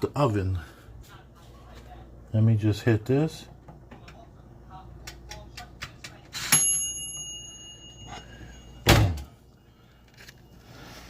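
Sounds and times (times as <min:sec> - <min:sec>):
timer bell ding: 0:06.5 - 0:08.9.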